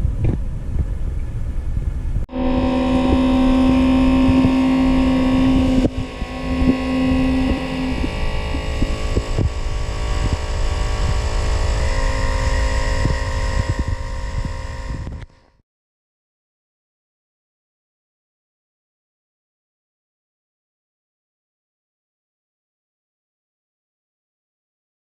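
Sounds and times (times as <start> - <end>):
strong humming tone: 0.0 - 15.6
heavy vehicle engine throbbing: 0.8 - 15.6.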